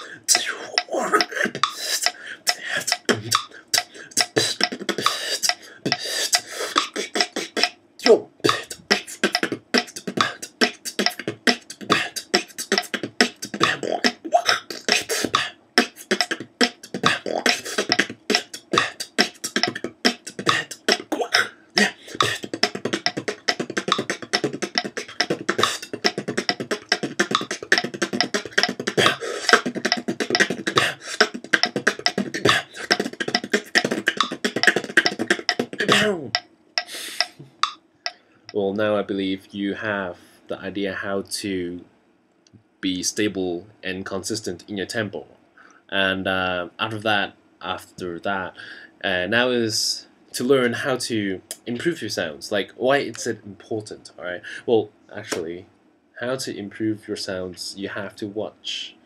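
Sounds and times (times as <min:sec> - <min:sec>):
person beatboxing: 0:00.0 - 0:37.8, 0:53.0 - 0:53.4.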